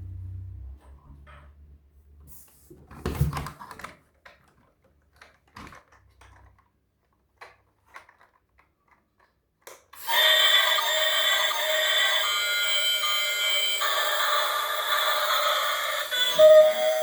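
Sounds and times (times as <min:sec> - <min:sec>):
high-pitched electronic toy sound: 0:10.0 - 0:17.0.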